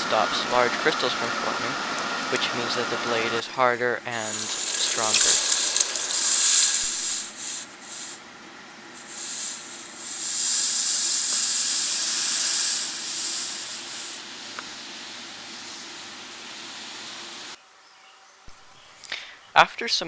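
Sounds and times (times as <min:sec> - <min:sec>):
hot steel hissing in water: 0:04.1 - 0:08.2, 0:08.9 - 0:17.6.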